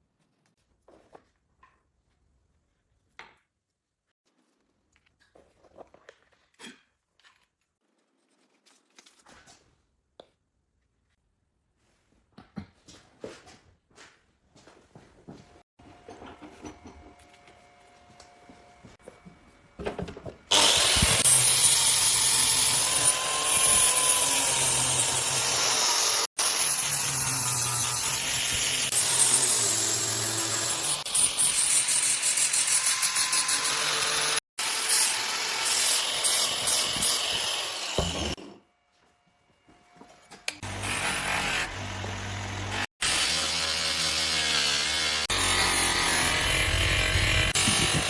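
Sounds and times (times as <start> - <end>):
power tool running: 20.5 - 38.4, 40.6 - 48.0.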